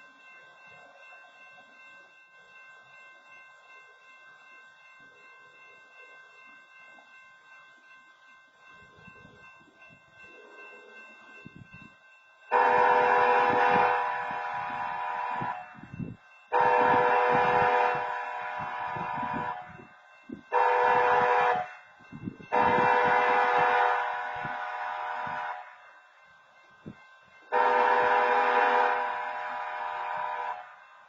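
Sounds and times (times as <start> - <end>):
locomotive horn blasts: 12.5 - 15.8, 16.5 - 19.8, 20.5 - 21.8, 22.5 - 25.8, 27.5 - 30.8.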